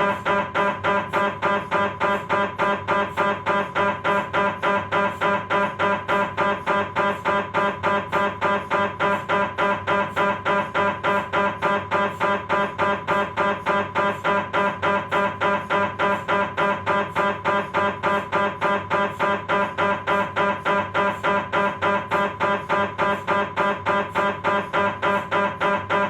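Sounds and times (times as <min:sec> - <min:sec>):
mri scanner buzzing knocks: 0:00.0 - 0:26.0.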